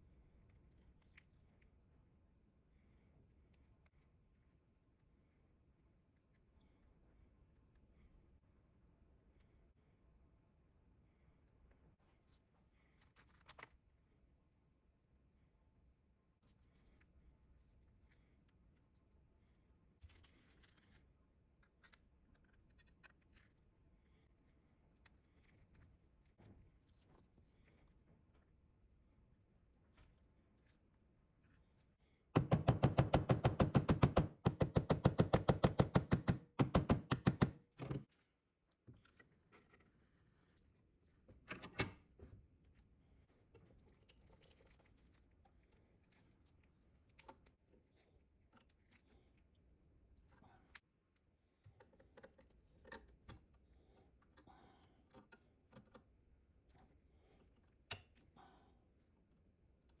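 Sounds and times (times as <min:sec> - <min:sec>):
fast sharp knocks: 0:32.4 - 0:38.0.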